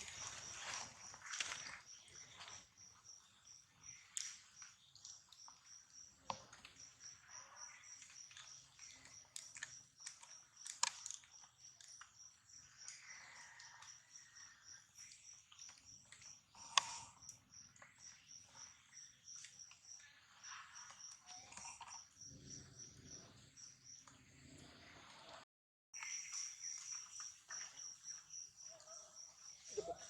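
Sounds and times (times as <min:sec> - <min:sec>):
insect chirping: 0:00.0 - 0:24.1, 0:26.0 - 0:30.0.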